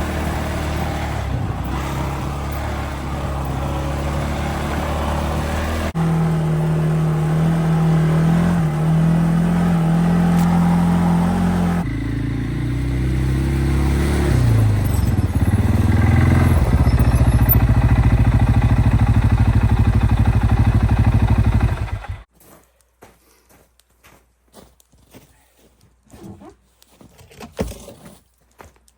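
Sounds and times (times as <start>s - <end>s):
vehicle engine running: 0.0s - 22.3s.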